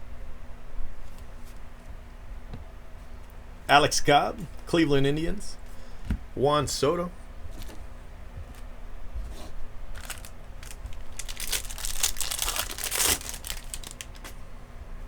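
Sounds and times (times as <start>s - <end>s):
plastic foil wrapper crinkling: 9.9s - 14.4s.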